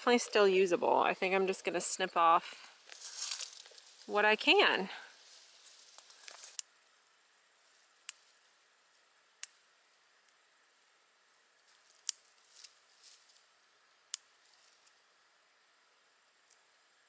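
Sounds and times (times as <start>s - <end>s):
plants rustling: 0.0s - 6.6s, 11.6s - 13.6s.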